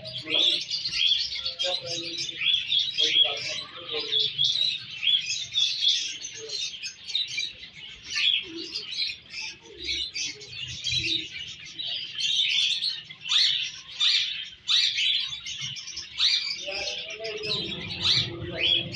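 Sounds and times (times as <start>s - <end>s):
finches chirping: 0.0s - 18.9s
downward-sliding bird calls: 16.1s - 18.9s.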